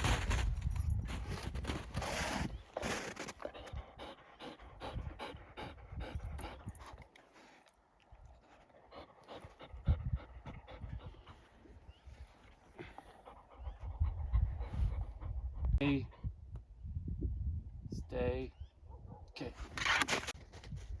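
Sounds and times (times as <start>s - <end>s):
dog panting: 2.2s - 7.2s, 8.4s - 11.8s, 12.8s - 16.3s.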